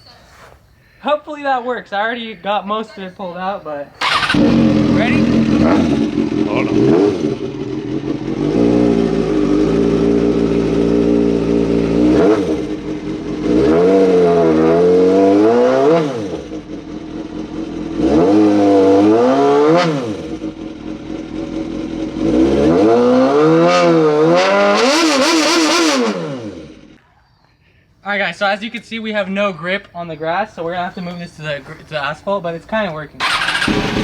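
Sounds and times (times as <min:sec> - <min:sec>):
motorcycle engine revving hard: 0:04.0 - 0:27.0, 0:33.2 - 0:34.0.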